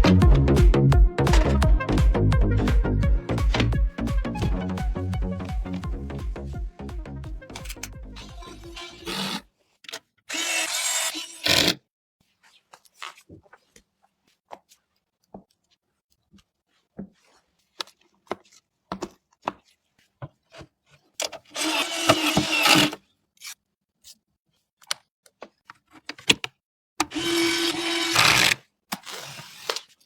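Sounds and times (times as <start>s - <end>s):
small motor whirring: 10.3s - 11.5s, 21.6s - 22.9s, 27.1s - 28.6s.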